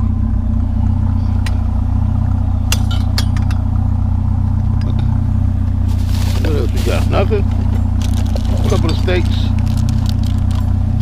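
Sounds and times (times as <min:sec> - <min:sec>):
truck engine idling: 0:00.0 - 0:11.0
metal scrap clinking: 0:02.7 - 0:03.8.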